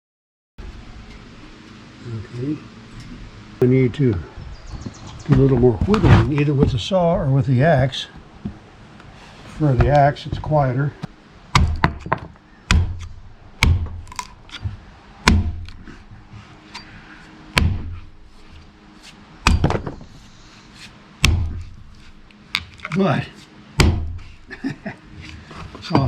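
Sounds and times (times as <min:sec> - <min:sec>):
axe chopping log: 0:11.5 - 0:16.0, 0:17.5 - 0:18.1, 0:19.4 - 0:20.1, 0:21.2 - 0:22.7, 0:23.8 - 0:24.3.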